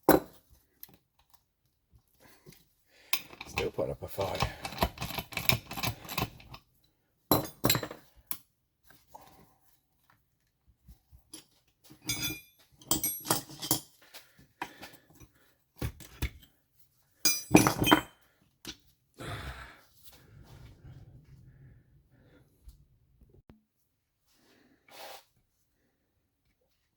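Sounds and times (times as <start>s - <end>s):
metal tools clinking on engine parts: 11.4s - 14.0s, 17.2s - 18.2s.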